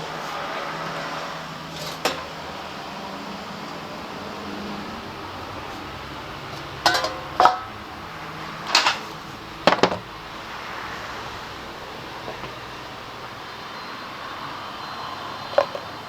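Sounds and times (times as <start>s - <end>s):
metal objects clanking: 1.7s - 2.3s, 6.8s - 7.8s, 8.6s - 10.0s.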